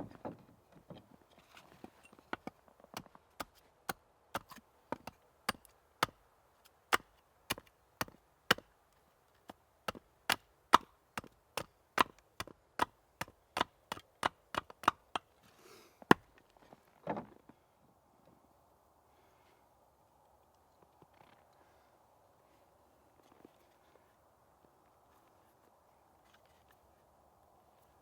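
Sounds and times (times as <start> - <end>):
hand tool striking wood: 6.9 - 8.7, 9.9 - 15.3.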